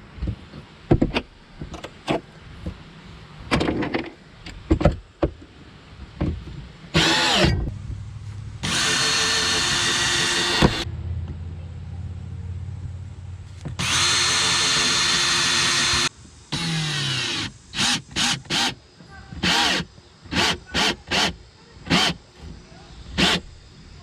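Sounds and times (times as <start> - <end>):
power drill running: 7.0 - 7.6, 8.6 - 10.9, 13.8 - 18.8, 19.4 - 22.2, 23.2 - 23.5.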